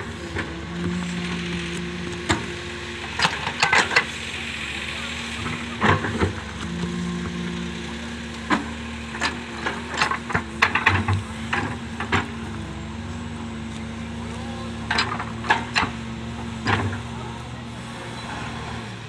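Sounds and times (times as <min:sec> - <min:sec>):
excavator diesel engine running: 0:00.0 - 0:19.0
sharp knocks and clatters: 0:08.4 - 0:12.6.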